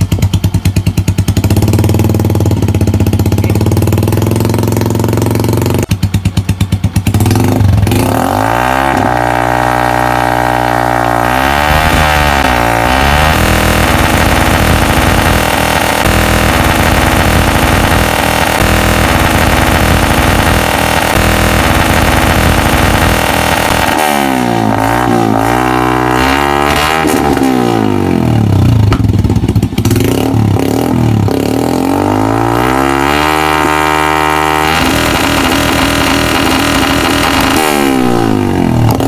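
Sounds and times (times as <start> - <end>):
motorcycle engine revving: 0.0 - 39.0.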